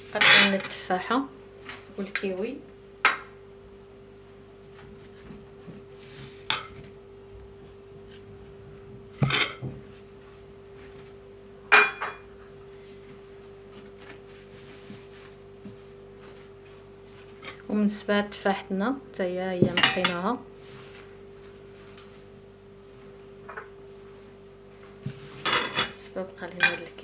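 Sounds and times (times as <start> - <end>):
faint steady hum: 0.0 - 27.0
knife and dishes clinking: 0.2 - 0.7, 9.2 - 9.6, 19.6 - 20.2, 25.4 - 26.0, 26.6 - 27.0.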